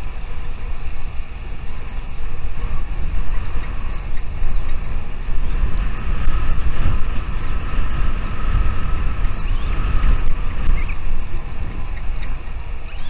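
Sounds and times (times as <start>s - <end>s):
wind buffeting microphone: 0.0s - 13.0s
high bird chirps: 9.4s - 9.8s.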